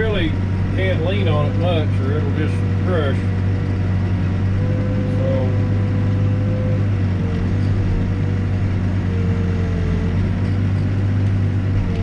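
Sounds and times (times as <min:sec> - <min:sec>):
backhoe diesel engine running: 0:00.0 - 0:12.0
wavering high tone: 0:04.6 - 0:08.0.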